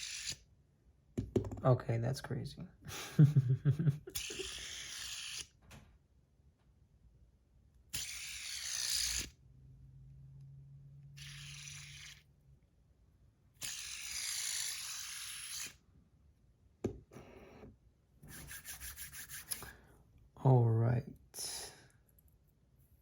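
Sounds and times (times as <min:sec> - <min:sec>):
fidget spinner bearing whirring: 0:04.2 - 0:05.5, 0:07.9 - 0:09.4, 0:11.2 - 0:12.3, 0:13.6 - 0:15.8.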